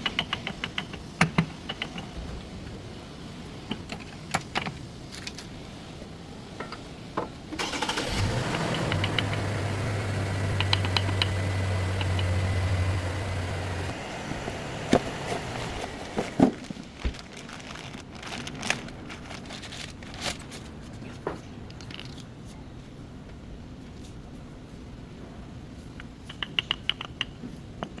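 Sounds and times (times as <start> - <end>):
car engine running: 7.6 - 16.4.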